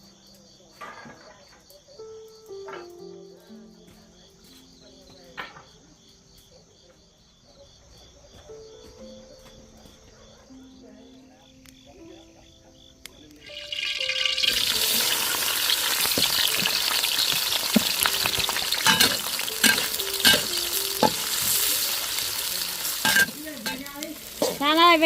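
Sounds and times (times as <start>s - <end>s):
soft background music: 0.0s - 25.0s
insect chirring: 1.4s - 25.0s
food sizzling in a pan: 13.4s - 25.0s
utensil scraping a pan: 14.6s - 24.8s.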